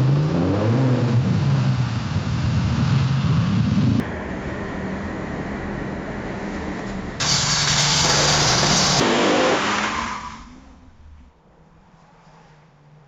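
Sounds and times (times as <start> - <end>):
car engine revving: 0.0 - 11.4
vehicle rumble: 0.0 - 13.0
loud sudden hiss: 7.2 - 9.5.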